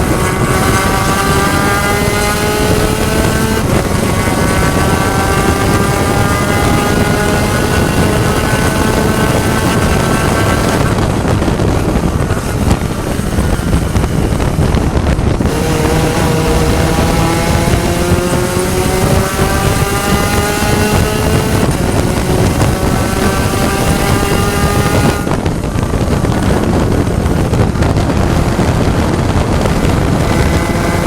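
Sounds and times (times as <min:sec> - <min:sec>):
race car engine: 0:00.0 - 0:31.0
wind rush: 0:00.0 - 0:31.0.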